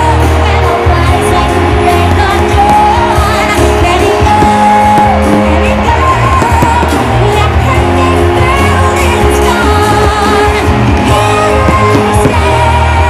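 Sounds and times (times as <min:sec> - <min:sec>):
loud music with singing: 0:00.0 - 0:13.0.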